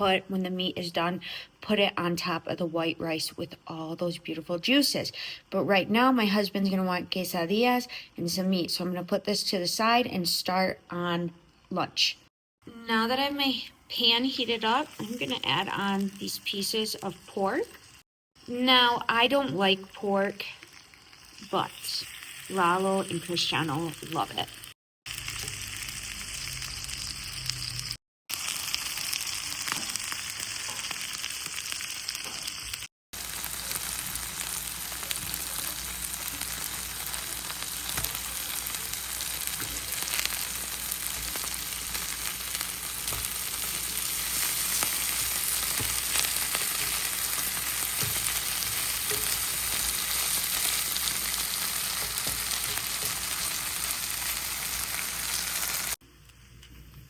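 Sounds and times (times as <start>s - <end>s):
pork sizzling in a pan: 14.7s - 56.0s.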